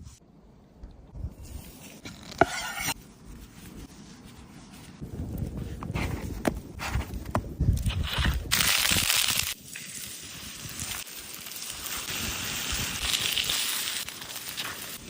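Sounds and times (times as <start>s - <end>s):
fish sizzling on hot stone: 8.6s - 15.0s.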